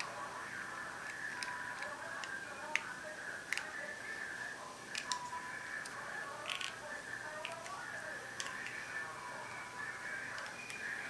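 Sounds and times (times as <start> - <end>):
faint steady background tone: 0.0 - 11.0
small plastic clicks: 3.5 - 3.7, 4.9 - 6.8, 8.4 - 8.8.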